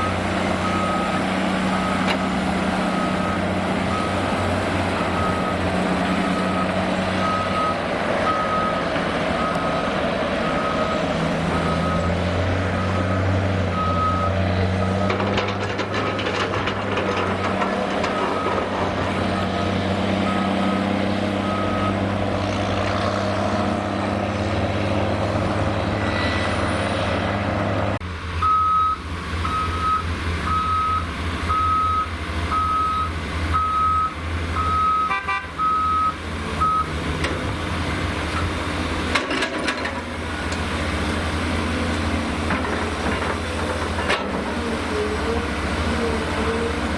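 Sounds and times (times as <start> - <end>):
reversing alarm beeping: 0.0 - 15.4, 17.4 - 24.0, 28.4 - 36.9
heavy diesel machinery running: 0.0 - 46.9.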